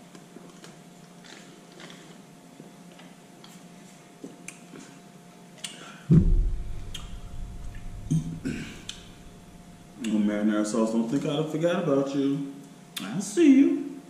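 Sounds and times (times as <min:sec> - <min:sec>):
person chewing food: 0:00.1 - 0:05.0
loud low rumble with thumps: 0:06.1 - 0:10.0.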